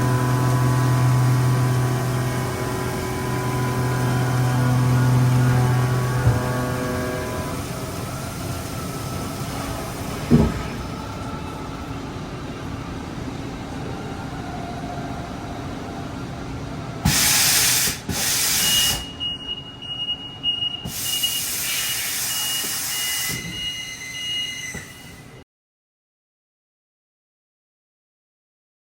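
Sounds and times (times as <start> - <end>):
machining center humming: 0.0 - 17.0
thin steady whine: 0.0 - 17.0
machine thump: 10.2 - 10.8
hissing bursts: 17.0 - 19.2, 20.8 - 24.1.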